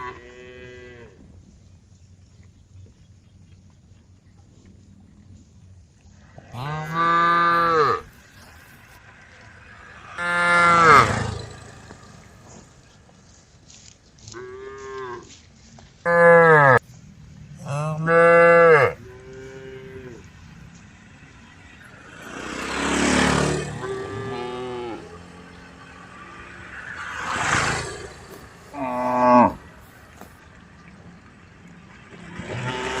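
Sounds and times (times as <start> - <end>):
cows mooing: 6.4 - 12.8, 16.1 - 16.8, 17.6 - 20.6, 21.7 - 30.3, 32.0 - 33.0.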